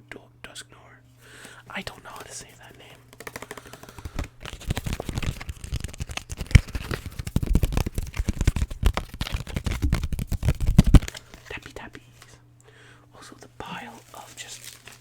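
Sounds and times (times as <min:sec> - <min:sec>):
fingertip tapping on card packs: 0:01.4 - 0:12.0
wrapper crinkling: 0:01.9 - 0:12.3, 0:13.8 - 0:15.0.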